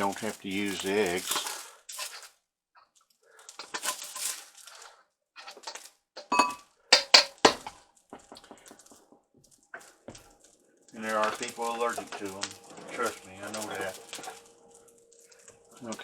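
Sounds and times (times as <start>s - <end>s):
soft rustling: 0.0s - 2.4s
dishes and utensils clinking: 3.6s - 4.4s, 5.4s - 8.8s, 11.0s - 16.0s.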